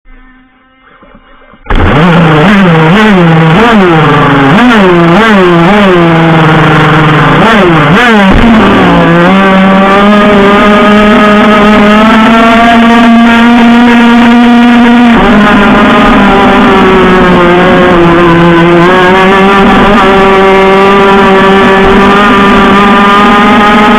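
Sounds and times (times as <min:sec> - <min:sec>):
model boat engine revving: 0:00.5 - 0:23.9.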